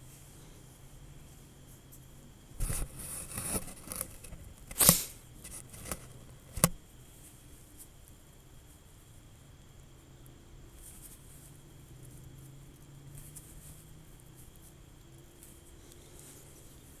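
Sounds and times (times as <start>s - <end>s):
scraping and rustling: 2.6s - 7.9s.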